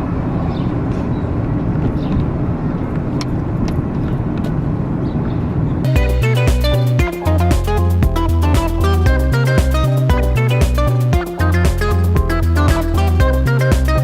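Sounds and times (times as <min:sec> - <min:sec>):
motor vehicle rumble: 0:00.0 - 0:14.0
background music with heavy beat: 0:05.9 - 0:14.0.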